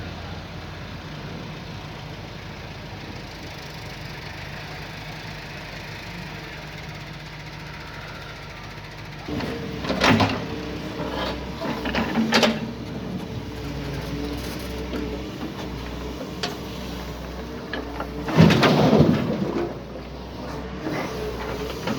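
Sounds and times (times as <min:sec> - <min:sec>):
excavator diesel engine running: 0:00.0 - 0:21.9
metallic clanks and rattles: 0:09.3 - 0:16.8.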